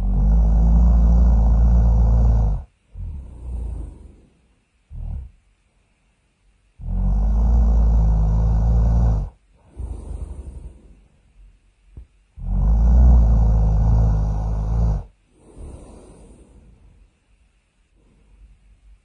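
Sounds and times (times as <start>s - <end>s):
cartoon snoring: 0.0s - 4.2s, 4.9s - 5.4s, 6.8s - 10.9s, 12.4s - 16.6s.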